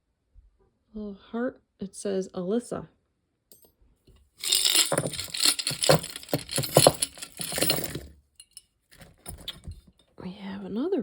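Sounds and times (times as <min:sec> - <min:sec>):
metal jewelry clinking: 0:04.4 - 0:09.8.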